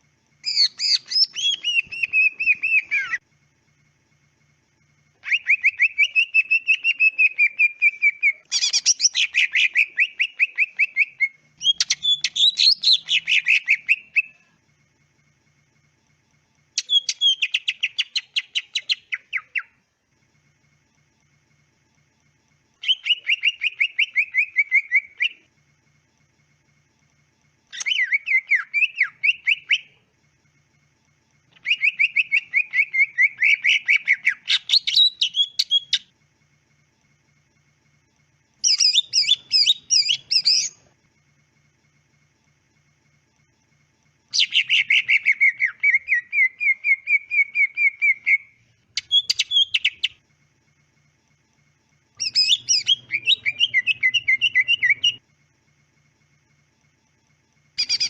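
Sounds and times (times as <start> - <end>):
bird rapid chirping song: 0.4 - 3.2, 5.2 - 14.4, 16.7 - 19.8, 27.7 - 30.0, 31.5 - 36.1, 38.6 - 40.8, 44.3 - 50.2, 52.2 - 55.2, 57.8 - 58.0.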